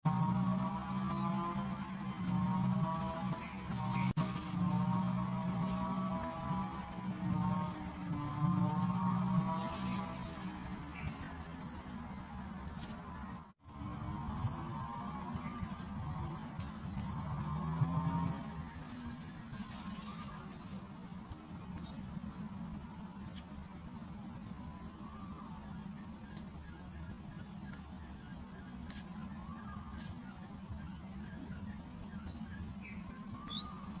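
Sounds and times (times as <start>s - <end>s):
small bird chirping: 0.0s - 22.5s, 23.3s - 34.0s
small bird squeaky chirps: 12.7s - 13.1s, 21.8s - 22.1s, 27.7s - 28.1s, 28.8s - 30.4s, 33.2s - 34.0s.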